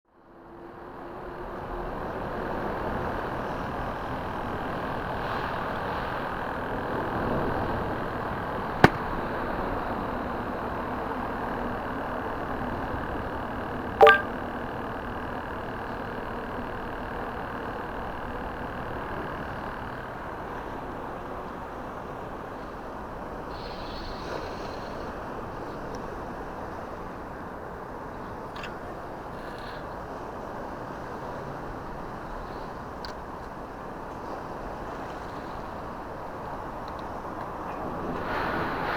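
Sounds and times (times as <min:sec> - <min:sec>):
ringing click: 0:14.0 - 0:14.3
sharp click: 0:14.0 - 0:14.3.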